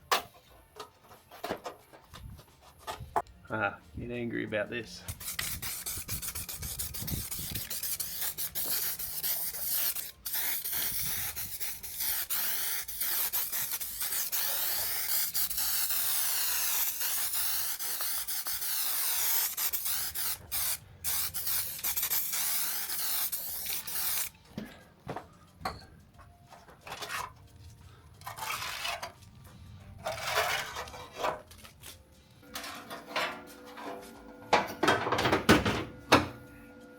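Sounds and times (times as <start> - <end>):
aerosol spray paint hissing: 5.1 - 24.3.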